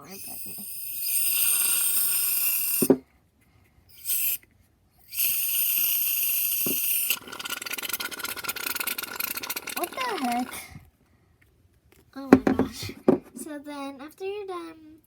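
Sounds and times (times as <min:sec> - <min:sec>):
spray crackling sputter: 0:00.0 - 0:03.0, 0:03.9 - 0:04.4, 0:05.1 - 0:10.8
aerosol can spraying foam: 0:00.1 - 0:03.0, 0:04.0 - 0:04.4, 0:05.1 - 0:10.6
person speaking: 0:09.6 - 0:10.8, 0:12.2 - 0:15.0.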